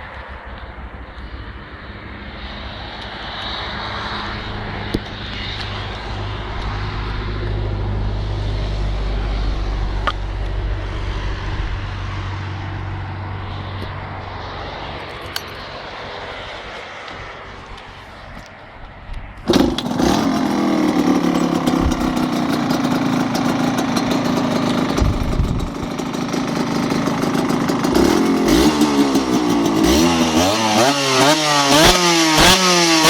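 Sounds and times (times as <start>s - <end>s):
two-stroke motorcycle engine: 4.8s - 12.8s, 19.4s - 33.0s.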